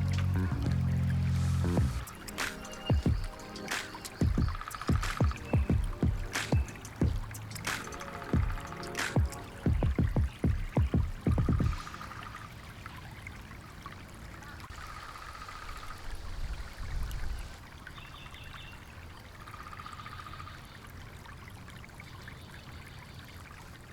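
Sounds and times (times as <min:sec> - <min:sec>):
water trickling: 0:00.0 - 0:23.9.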